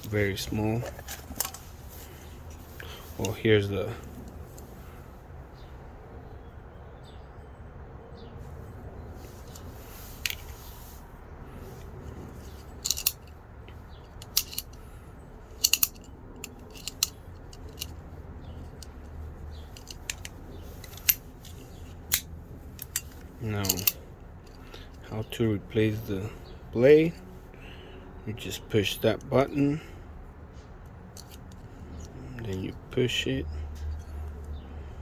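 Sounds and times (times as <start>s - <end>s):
low steady hum: 0.0s - 6.5s, 8.4s - 35.0s
utility knife clicking: 15.6s - 17.9s.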